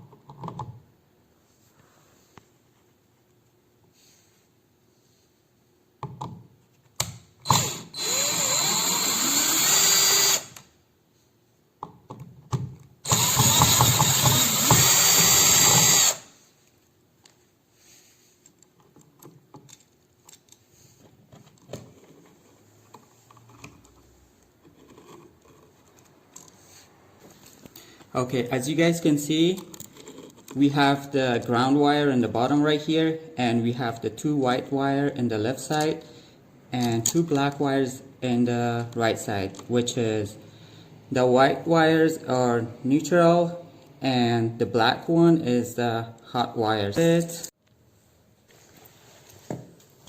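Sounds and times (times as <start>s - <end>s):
drill bit clicks: 7.0s - 10.7s, 13.0s - 16.2s
cordless drill motor whining: 7.4s - 10.6s, 13.0s - 16.3s.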